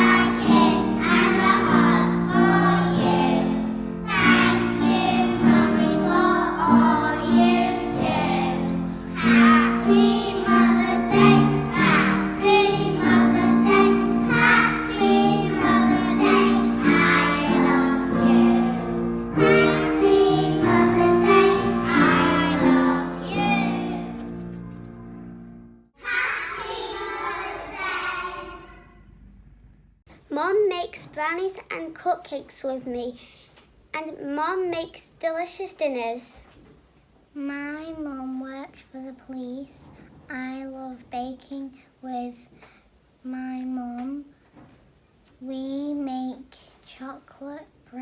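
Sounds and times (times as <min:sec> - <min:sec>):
children singing: 0:00.0 - 0:24.3, 0:26.0 - 0:28.9
musical accompaniment: 0:00.0 - 0:25.9.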